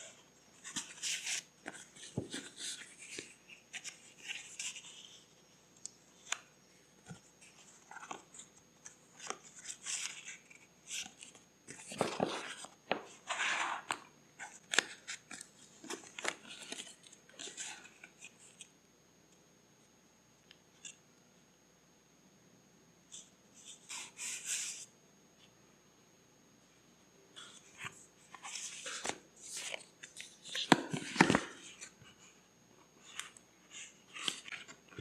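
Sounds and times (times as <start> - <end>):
paper rustling: 0.0 - 5.3, 7.0 - 18.7, 27.4 - 32.3.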